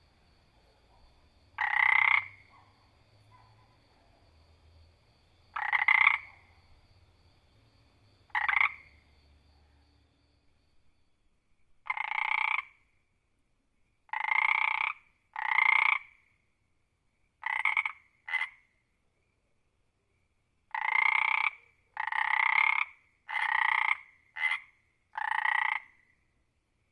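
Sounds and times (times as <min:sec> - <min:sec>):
frog croaking: 0:00.6 - 0:04.6, 0:05.4 - 0:07.5, 0:08.1 - 0:10.0, 0:11.8 - 0:13.0, 0:14.1 - 0:16.4, 0:17.4 - 0:18.8, 0:20.7 - 0:26.2.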